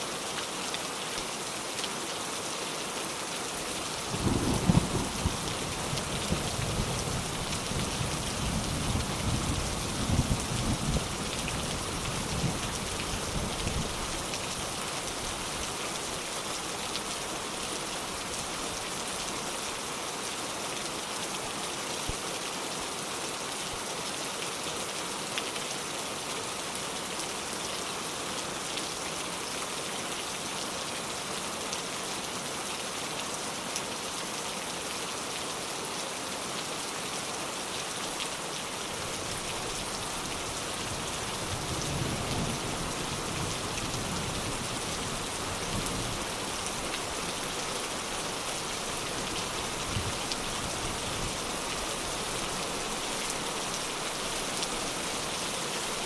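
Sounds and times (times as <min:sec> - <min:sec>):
steady rain falling: 0:00.0 - 0:56.0
distant thunder rumble: 0:04.1 - 0:07.2.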